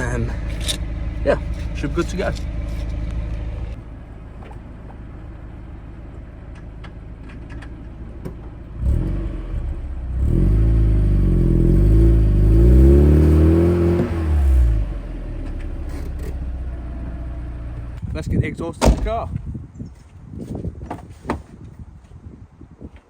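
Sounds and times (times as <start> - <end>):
car engine idling and revving: 0.0 - 18.1.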